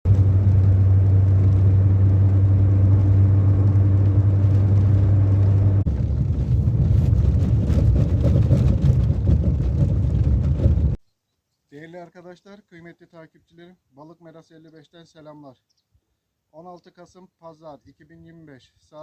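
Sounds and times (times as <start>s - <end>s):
low rumble with hum: 0.0s - 11.0s
crackling: 0.1s - 11.0s.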